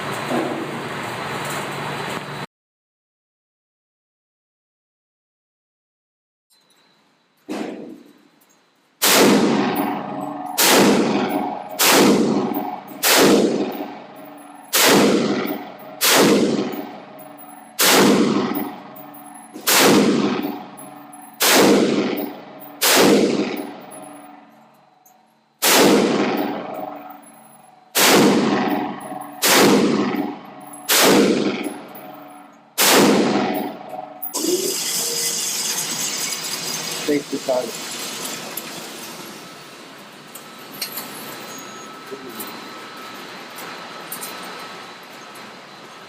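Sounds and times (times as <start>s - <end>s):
gunshots with ringing echo: 9.0s - 24.5s, 25.6s - 34.4s.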